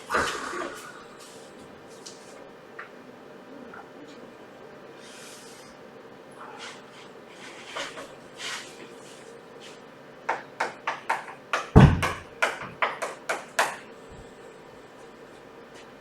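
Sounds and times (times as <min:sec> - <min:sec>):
deep thump: 0:11.8 - 0:12.3.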